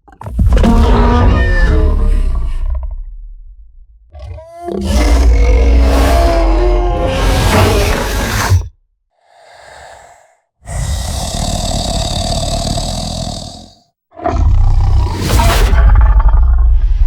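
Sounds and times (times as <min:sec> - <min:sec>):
rough creature roar: 0:00.5 - 0:03.0, 0:04.1 - 0:08.7, 0:09.3 - 0:17.0
creature long screech: 0:00.6 - 0:02.7, 0:04.4 - 0:08.6.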